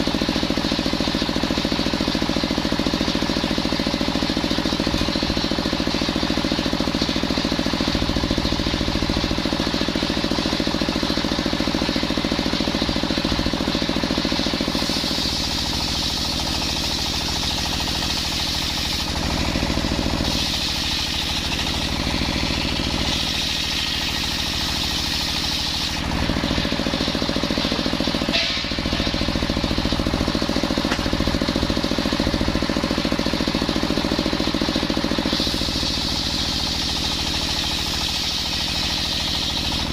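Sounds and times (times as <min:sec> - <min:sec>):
circular sawmill running: 0:00.0 - 0:39.9
saw blade cutting whine: 0:04.2 - 0:34.2, 0:34.9 - 0:39.9.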